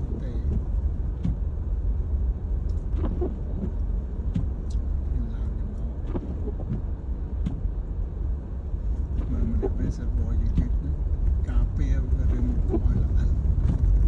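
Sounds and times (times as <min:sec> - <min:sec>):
car rumble from inside cabin: 0:00.0 - 0:14.0.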